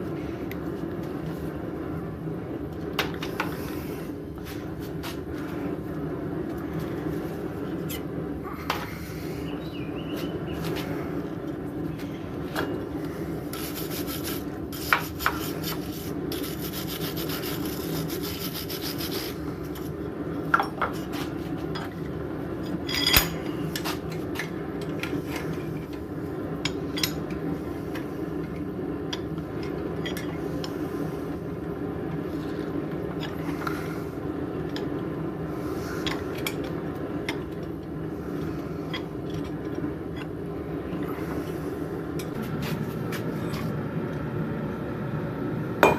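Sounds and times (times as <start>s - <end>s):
rasping strokes on metal: 13.5s - 19.4s.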